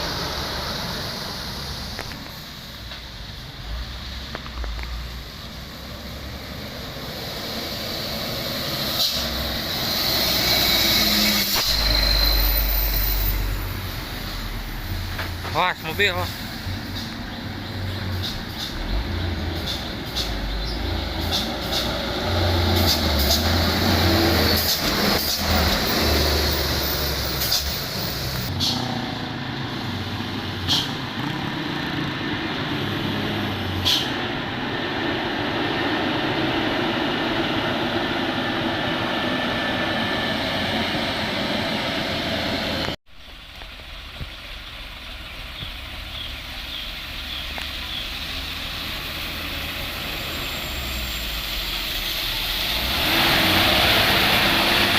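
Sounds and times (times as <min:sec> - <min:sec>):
diesel truck engines running: 0:00.0 - 0:54.9.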